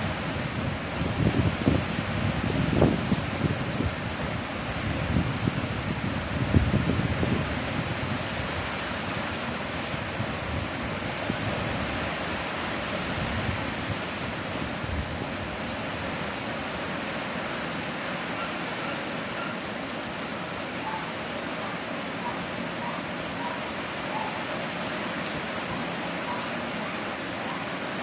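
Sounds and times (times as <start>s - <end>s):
heavy rain hissing: 0.0s - 28.0s
wind buffeting microphone: 0.1s - 8.7s.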